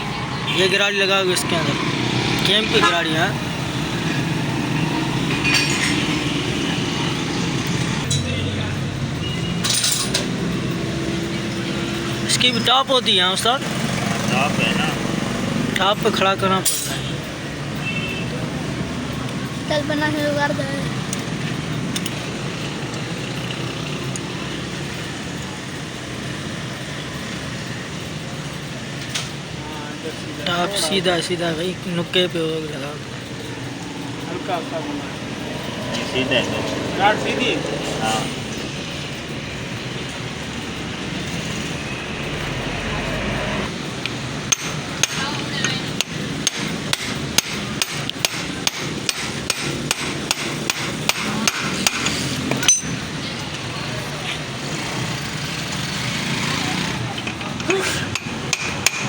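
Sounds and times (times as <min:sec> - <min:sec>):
road traffic rumble: 0:00.0 - 0:59.0
hammer tapping on metal: 0:44.5 - 0:53.0, 0:57.2 - 0:59.0.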